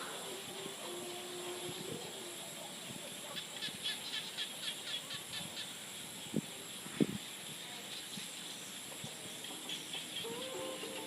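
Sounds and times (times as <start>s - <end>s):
high-pitched frog chorus: 0.0s - 5.9s, 9.4s - 11.0s
frogs chirping: 0.0s - 11.0s.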